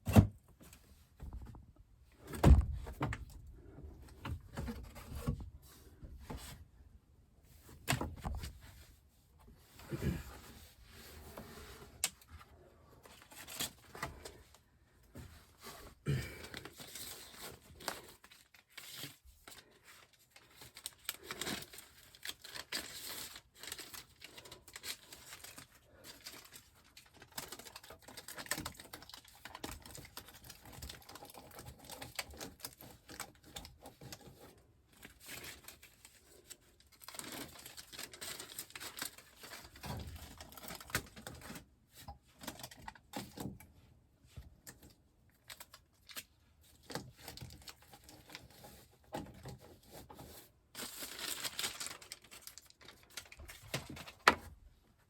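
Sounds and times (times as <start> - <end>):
tape crinkling: 16.6 - 43.5, 44.6 - 54.5.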